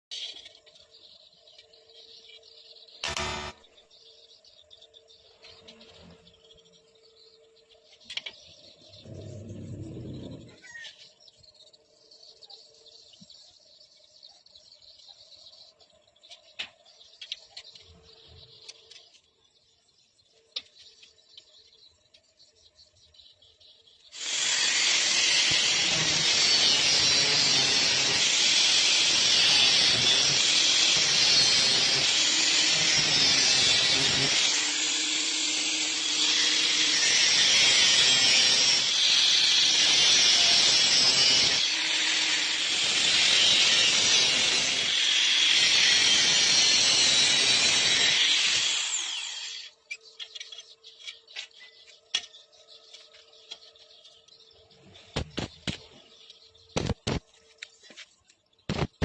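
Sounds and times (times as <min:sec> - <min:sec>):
angle grinder cutting steel: 0:03.0 - 0:03.6, 0:24.2 - 0:49.7.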